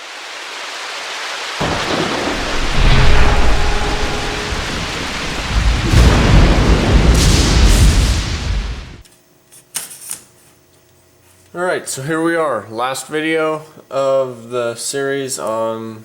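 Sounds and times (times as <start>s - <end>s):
rain hiss: 0.0s - 9.1s
thunder rumbling: 1.6s - 9.0s.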